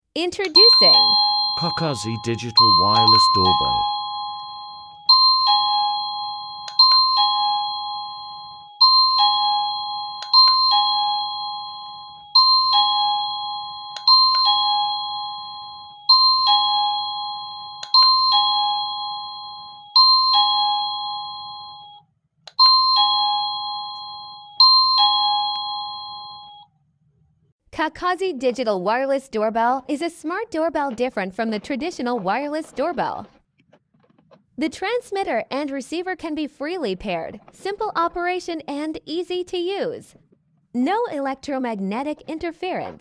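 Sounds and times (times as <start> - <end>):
doorbell click: 0.5 - 26.6
doorbell ding-dong chime: 0.6 - 26.6.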